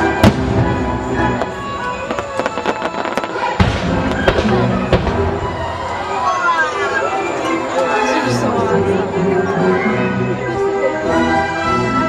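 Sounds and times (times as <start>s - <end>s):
fireworks bangs and crackles: 0.0s - 6.8s
accompanying music: 0.0s - 12.0s.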